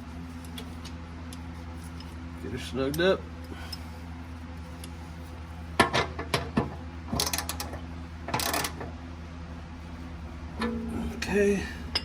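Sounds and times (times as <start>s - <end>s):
steady low hum: 0.0s - 12.0s
ratchet wrench clicking: 7.2s - 7.7s, 8.4s - 8.8s.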